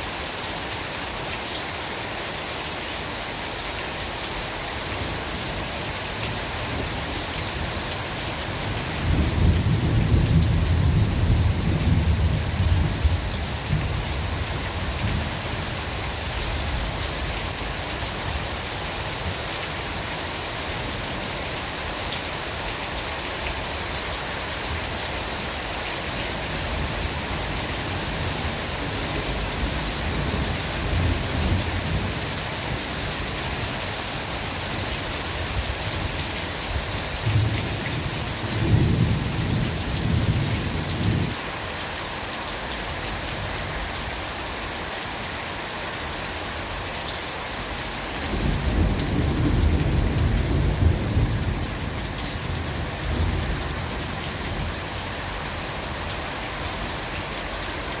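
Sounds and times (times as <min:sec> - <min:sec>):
steady rain in a forest: 0:00.0 - 0:58.0
low thunder rumbling: 0:48.3 - 0:54.7.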